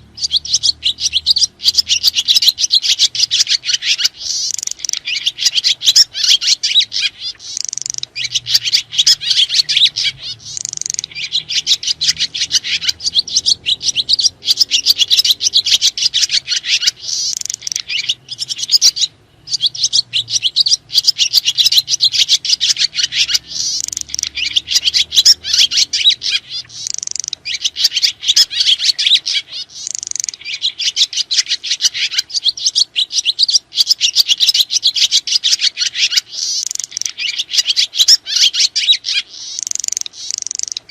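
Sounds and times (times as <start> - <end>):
swiftlets twittering: 0.2 - 29.1.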